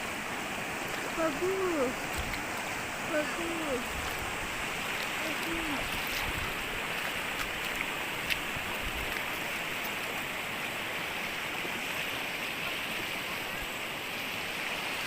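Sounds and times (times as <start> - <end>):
river water rushing: 0.0 - 15.0.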